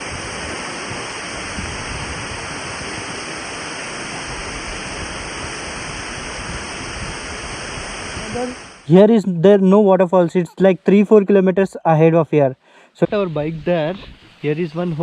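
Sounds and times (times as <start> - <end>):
waterfall rushing: 0.0 - 8.9.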